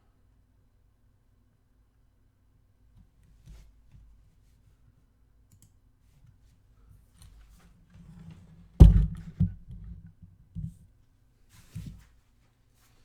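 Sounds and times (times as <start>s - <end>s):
loud sharp knock: 8.8s - 9.5s.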